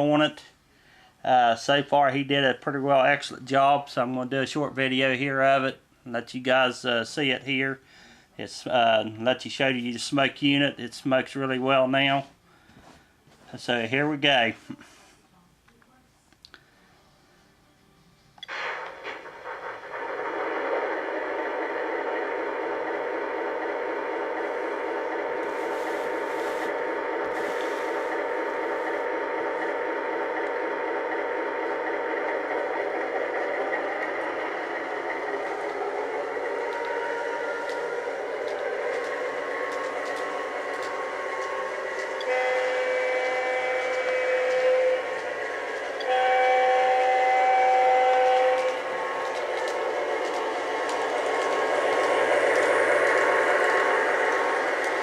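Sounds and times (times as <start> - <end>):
model train motor and wheel hum: 18.4 - 55.0
model train horn blast: 42.0 - 45.3, 45.9 - 48.9.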